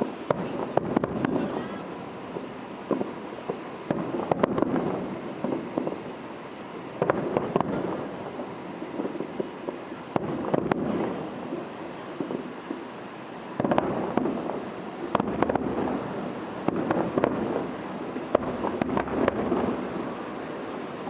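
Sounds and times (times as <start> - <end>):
firework shell bursts: 0.0 - 21.0
rumble of echoing explosions: 0.2 - 6.0, 13.6 - 21.0.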